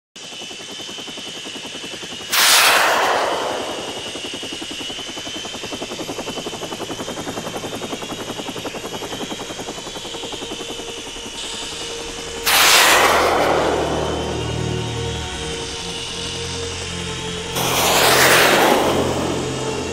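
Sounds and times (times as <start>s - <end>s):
toy helicopter rotor chopping: 0.2s - 19.9s
loud blast: 2.3s - 4.4s, 12.4s - 15.2s, 17.6s - 19.9s.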